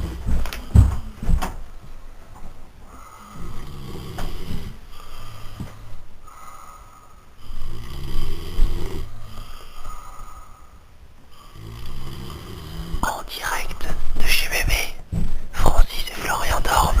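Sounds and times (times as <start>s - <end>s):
rattling snores: 2.9s - 10.7s, 11.3s - 13.1s.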